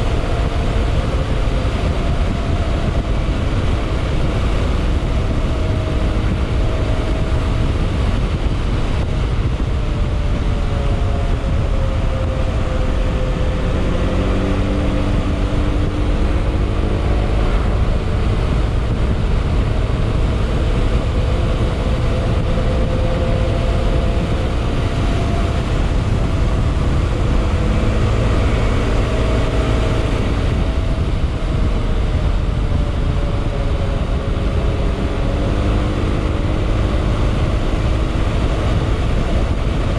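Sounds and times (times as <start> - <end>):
wind and road rumble: 0.0 - 39.9.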